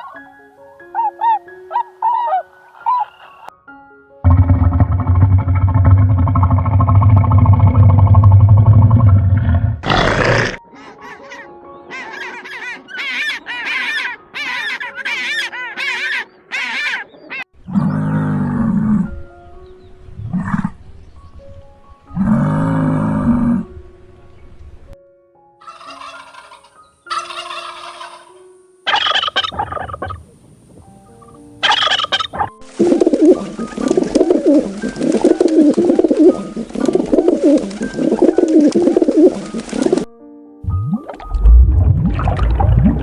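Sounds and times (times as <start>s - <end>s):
poultry calling: 9.9s - 18.2s, 25.6s - 30.2s, 31.1s - 40.0s.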